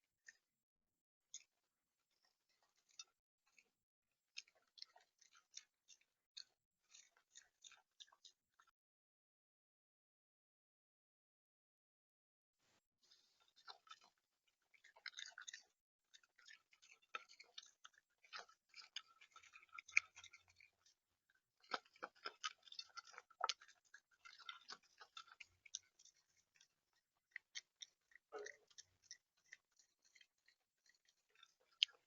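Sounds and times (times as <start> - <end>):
animal pecking and cracking seed: 1.3 - 8.7, 13.1 - 32.0.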